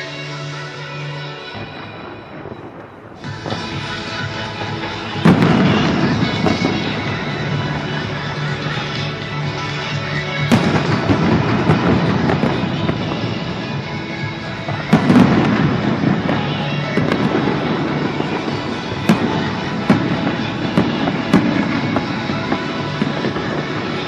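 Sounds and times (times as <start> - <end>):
background music: 0.0 - 24.0
fireworks bursting and crackling: 1.5 - 24.0.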